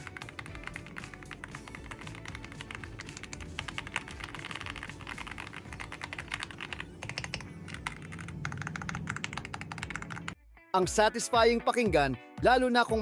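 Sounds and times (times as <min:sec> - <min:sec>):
rapid typing on mechanical keyboard: 0:00.0 - 0:10.4.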